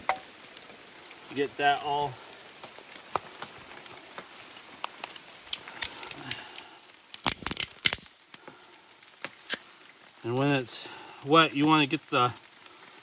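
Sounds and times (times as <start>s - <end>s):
sharp wood cracks: 0.0s - 1.0s, 2.6s - 10.1s
kindling clicking and rustling: 2.6s - 9.8s.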